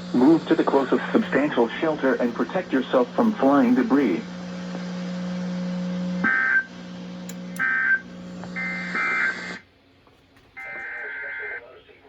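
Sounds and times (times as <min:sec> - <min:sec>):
steady low hum: 0:00.0 - 0:12.0
short buzzing data bursts: 0:06.2 - 0:06.7, 0:07.5 - 0:09.6.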